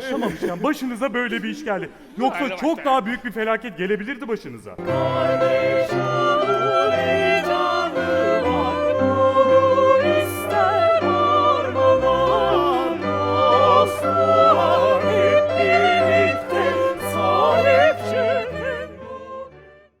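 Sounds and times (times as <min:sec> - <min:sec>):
orchestra playing: 0:04.8 - 0:19.8
operatic singing: 0:04.8 - 0:20.0.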